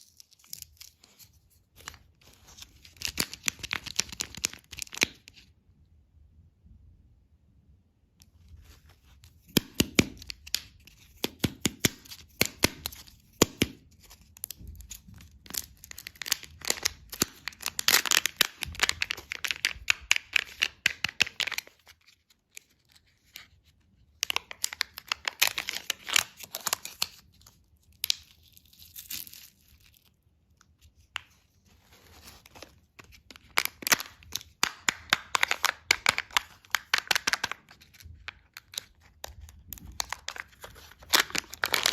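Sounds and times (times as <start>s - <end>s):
plastic packaging crinkling and tearing: 0.0s - 5.4s, 14.1s - 23.5s, 24.2s - 30.2s, 31.0s - 41.9s.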